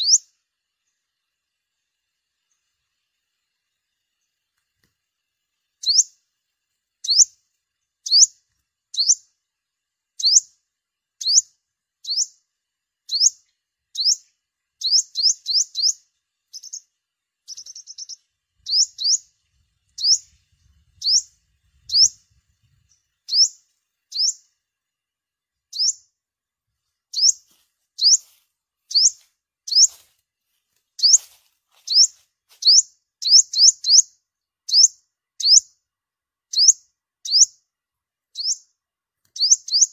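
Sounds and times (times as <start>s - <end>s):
sunbird calling: 0.0s - 1.1s, 5.8s - 6.3s, 7.0s - 9.4s, 10.2s - 10.6s, 11.2s - 24.6s, 25.7s - 26.2s, 27.1s - 30.1s, 31.0s - 35.8s, 36.5s - 37.6s, 38.3s - 38.7s, 39.4s - 39.9s.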